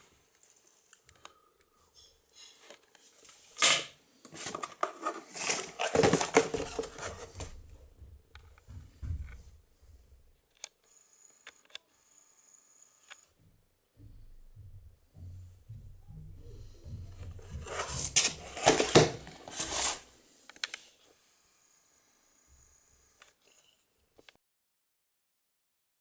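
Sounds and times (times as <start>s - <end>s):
rustling and clattering: 4.3s - 10.3s, 14.0s - 20.2s
low rumble: 14.0s - 17.8s.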